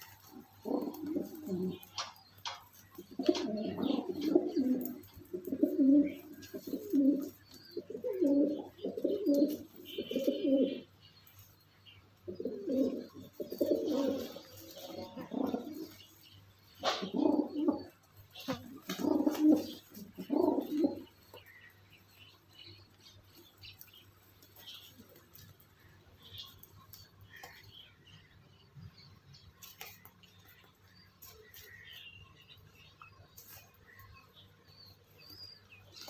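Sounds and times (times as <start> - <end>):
pigeons cooing: 0.0 - 11.0, 12.2 - 21.8.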